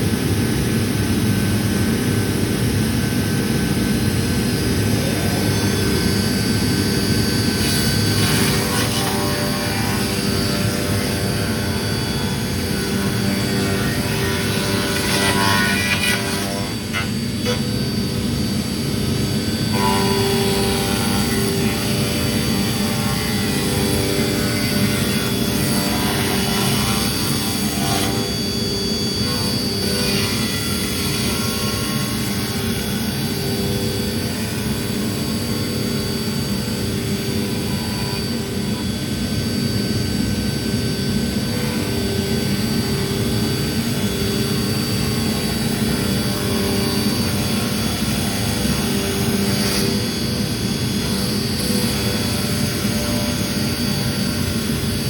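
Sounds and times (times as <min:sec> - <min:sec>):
cnc router spindle cutting: 0:00.0 - 0:55.0.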